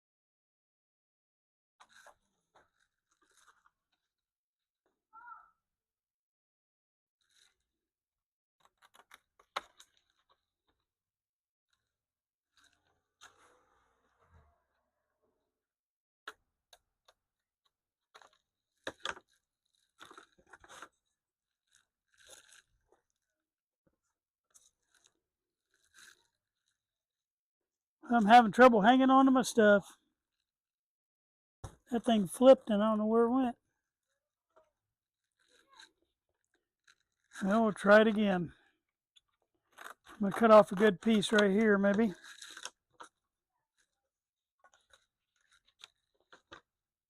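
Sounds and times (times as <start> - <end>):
wood veneer crunching crackles: 1.8 - 4.2, 7.2 - 7.7, 18.0 - 23.4, 24.0 - 26.9, 35.2 - 38.4, 39.7 - 44.0
faint crunching of wood veneer: 39.7 - 44.0.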